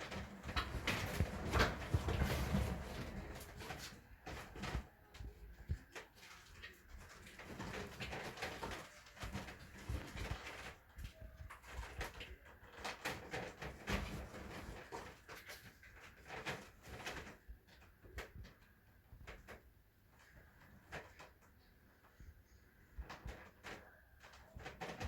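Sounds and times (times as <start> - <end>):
cats playing knocks and rattles: 0.0 - 25.0.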